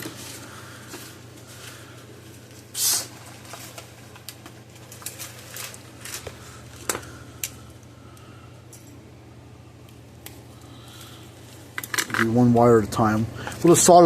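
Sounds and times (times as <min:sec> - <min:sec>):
steady low hum: 0:00.0 - 0:14.0
short hiss: 0:02.7 - 0:03.1.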